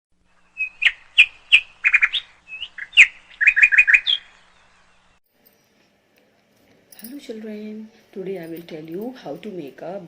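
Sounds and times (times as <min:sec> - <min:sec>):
bird chirping: 0:00.2 - 0:05.2.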